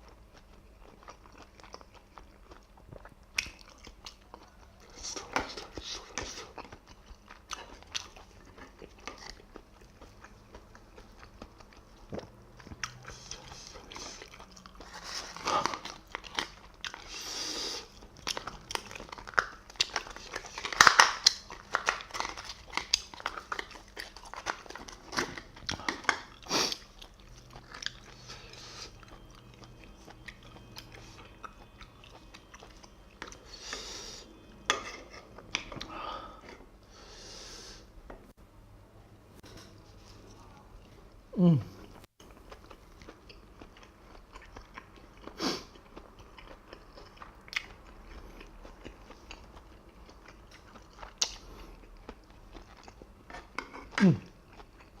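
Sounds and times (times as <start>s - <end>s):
wet chewing and lip smacking: 0.0s - 17.2s, 42.0s - 55.0s.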